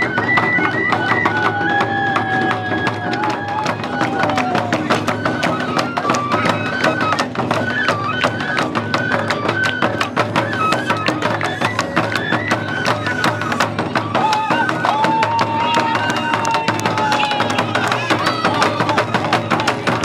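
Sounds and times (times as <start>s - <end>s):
high flute melody: 0.0s - 20.0s
quick steady drum strikes: 13.2s - 20.0s.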